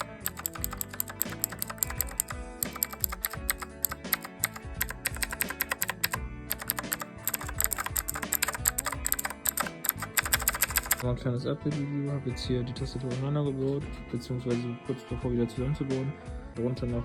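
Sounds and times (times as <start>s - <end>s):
fast typing on mechanical keyboard: 0.0s - 11.0s
background music: 0.0s - 17.0s.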